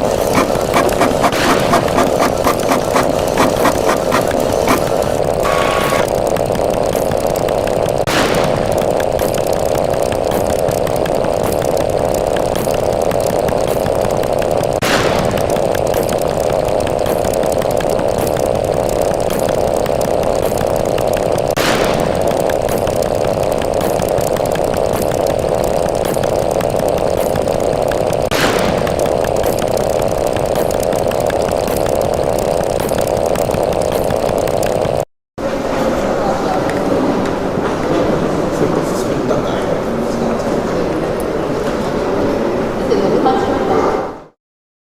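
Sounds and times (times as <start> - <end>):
harsh buzzing drone: 0.0 - 35.6.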